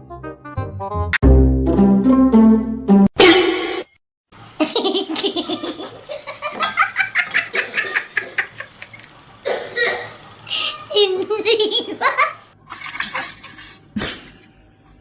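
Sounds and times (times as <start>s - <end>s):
small child laughing: 4.6s - 9.0s, 9.7s - 12.4s.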